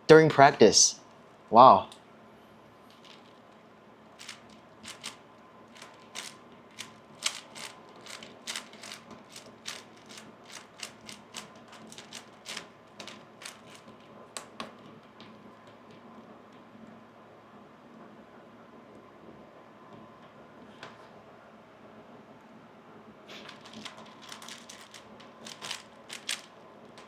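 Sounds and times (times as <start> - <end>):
puzzle cube plastic clicks: 2.9 - 3.4, 4.2 - 14.7, 23.5 - 27.0.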